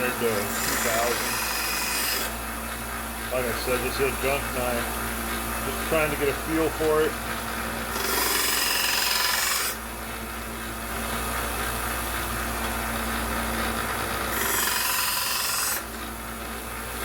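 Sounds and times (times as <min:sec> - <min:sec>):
belt sander grinding steel blade: 0:00.0 - 0:04.9, 0:05.5 - 0:09.9, 0:14.1 - 0:16.0
belt sander running hum: 0:00.0 - 0:17.0.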